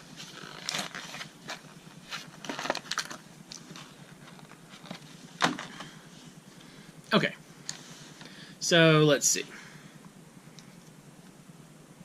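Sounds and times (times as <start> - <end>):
packaging crinkling and crackling: 0.2 - 5.8.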